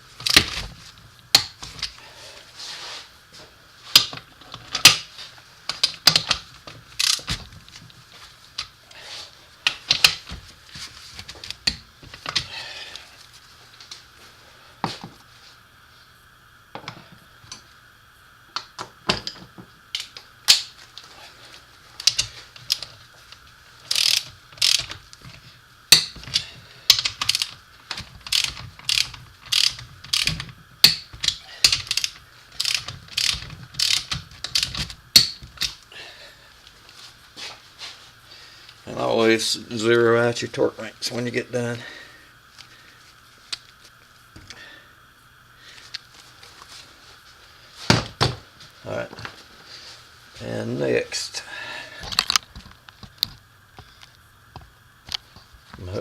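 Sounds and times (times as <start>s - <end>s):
torque wrench ratcheting clicks: 7.0s - 7.4s, 22.0s - 22.9s, 23.9s - 25.0s, 25.9s - 35.7s.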